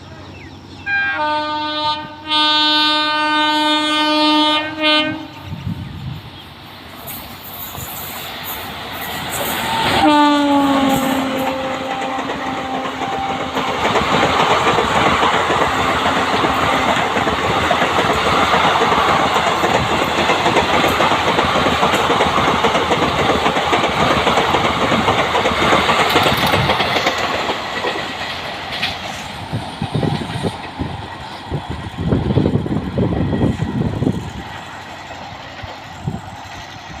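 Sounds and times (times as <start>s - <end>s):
train horn: 0.9s - 5.7s, 9.6s - 13.9s
train wheels clacking on rails: 6.8s - 37.0s.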